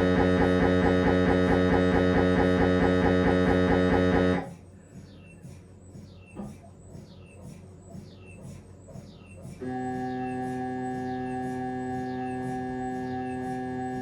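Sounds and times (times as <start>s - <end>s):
mri scanner droning tones: 0.0s - 4.5s.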